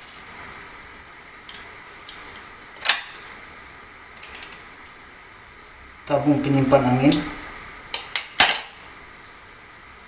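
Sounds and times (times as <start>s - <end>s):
sharp metallic clink with ring: 0.0s - 0.5s.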